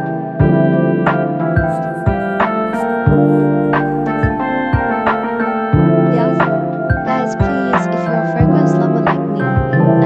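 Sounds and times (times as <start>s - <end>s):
sustained keyboard chords: 1.6s - 10.0s
slow drum beat: 1.7s - 5.5s.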